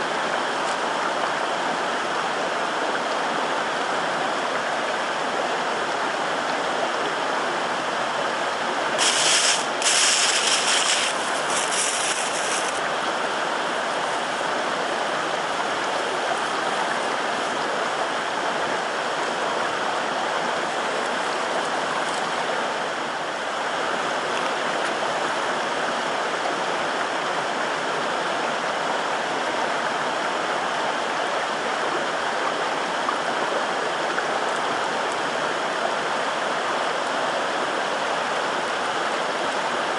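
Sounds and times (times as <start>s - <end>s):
stream flowing: 0.0s - 39.9s
high hiss bursts: 9.0s - 12.8s.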